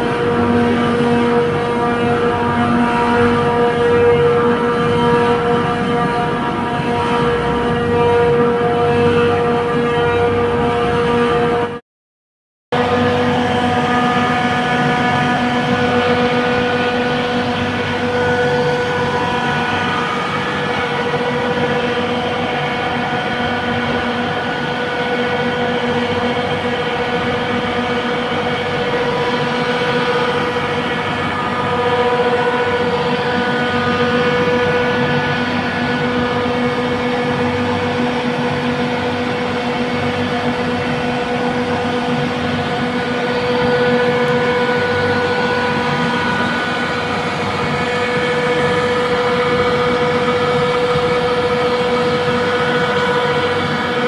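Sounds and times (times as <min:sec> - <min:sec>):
compressor humming: 0:12.8 - 0:54.0
constant rushing noise: 0:12.8 - 0:54.0.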